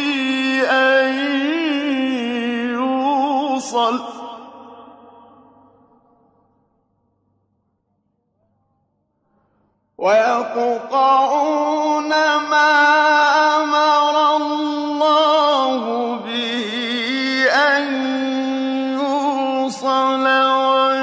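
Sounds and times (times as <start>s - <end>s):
man chanting melodic recitation: 0.0s - 4.8s, 10.0s - 21.0s.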